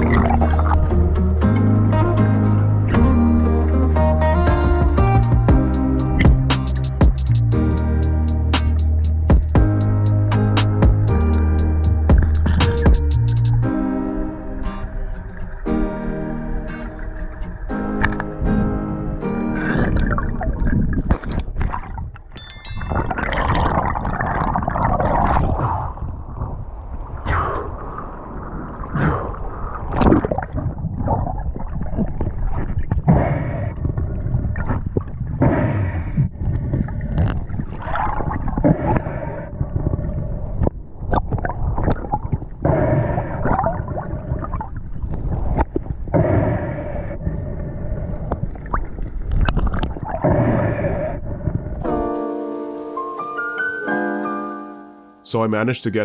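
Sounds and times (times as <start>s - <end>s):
water gurgling and sloshing: 22.8s - 51.8s.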